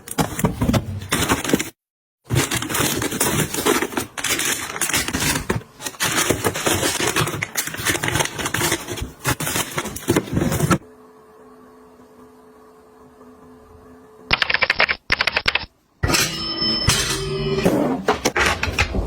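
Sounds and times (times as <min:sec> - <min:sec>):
household items handling crackling: 0:00.0 - 0:10.8.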